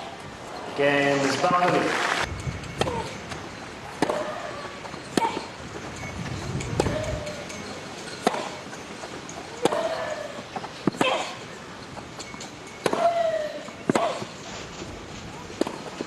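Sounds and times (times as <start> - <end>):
outdoor background noise: 0.0 - 16.0
tennis racket hitting ball: 2.8 - 4.4, 8.2 - 11.4, 12.8 - 14.3, 15.6 - 16.0.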